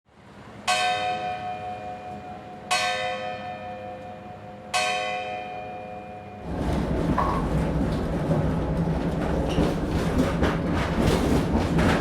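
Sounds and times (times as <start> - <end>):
church bell tolling: 0.6 - 6.6.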